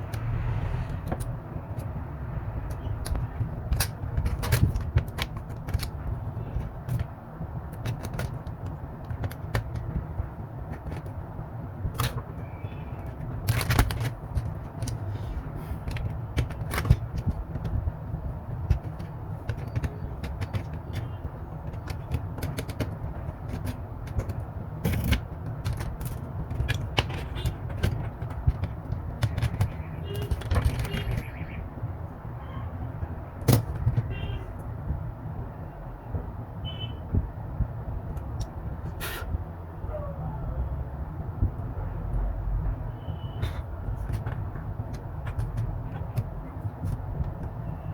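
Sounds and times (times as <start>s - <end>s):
low rumble: 0.0s - 1.6s
tools and small parts clicking: 18.6s - 31.4s.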